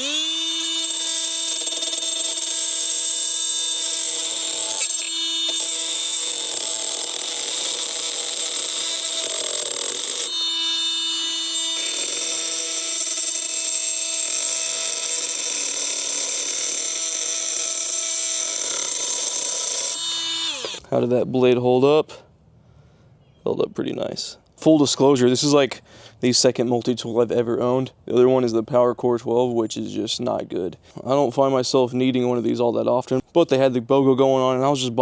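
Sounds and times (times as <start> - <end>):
oscillating multi-tool cutting nail: 0.0 - 20.9.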